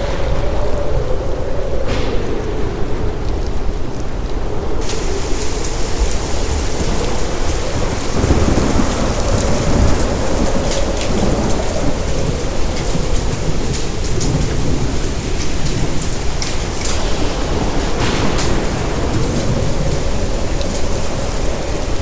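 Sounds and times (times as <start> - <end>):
hail and heavy rain pounding: 4.8 - 22.0.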